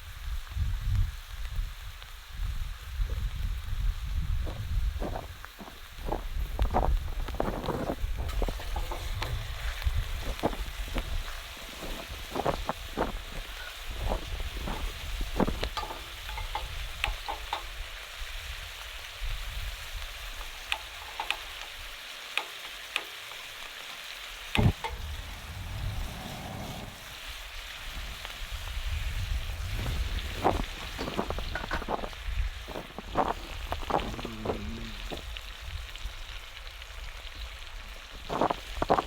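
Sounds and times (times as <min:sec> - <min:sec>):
food sizzling in a pan: 0:00.0 - 0:39.0
utensil stirring in a pan: 0:20.4 - 0:27.4
low rumble: 0:24.6 - 0:31.6.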